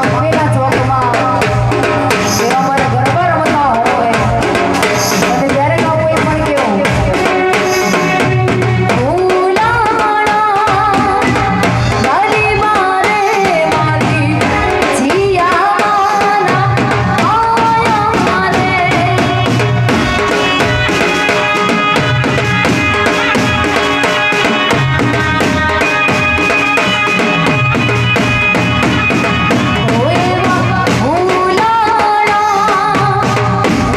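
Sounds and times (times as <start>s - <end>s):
keyboard accompaniment: 0.0s - 33.9s
steady drum beat: 0.0s - 33.9s
person singing: 29.8s - 33.9s.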